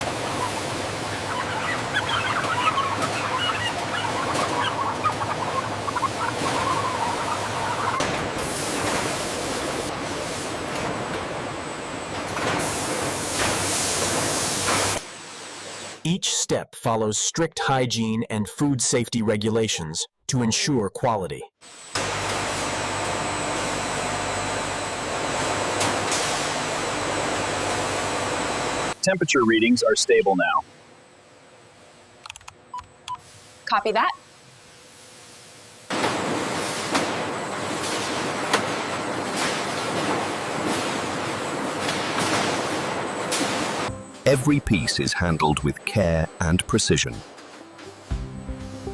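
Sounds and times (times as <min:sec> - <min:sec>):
chickens clucking: 0:00.3 - 0:08.2
machinery hiss: 0:12.6 - 0:16.0
steady background noise: 0:21.6 - 0:48.1.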